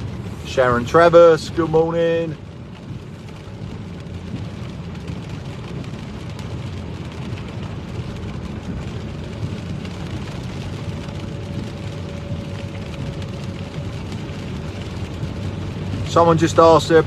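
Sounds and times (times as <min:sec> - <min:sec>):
engine and tyres on wet road: 0:00.0 - 0:17.0
rain hitting car roof: 0:00.0 - 0:17.0.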